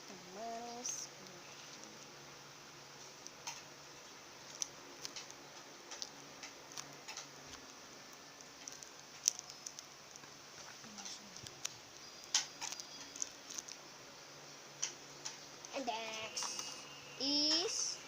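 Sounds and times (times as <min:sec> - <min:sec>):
paper clicking and crinkling: 0:04.4 - 0:13.8.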